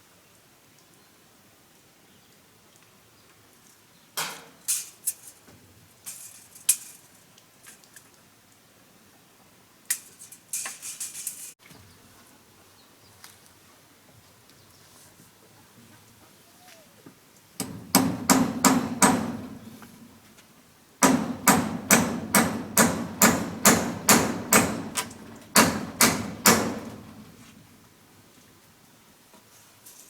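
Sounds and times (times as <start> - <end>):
hammer blows: 17.6 - 20.2, 21.0 - 27.7.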